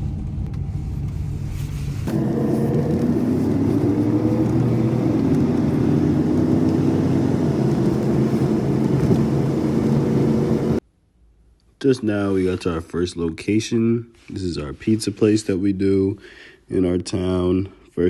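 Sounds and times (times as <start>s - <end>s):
vehicle engine driving: 0.0s - 10.8s.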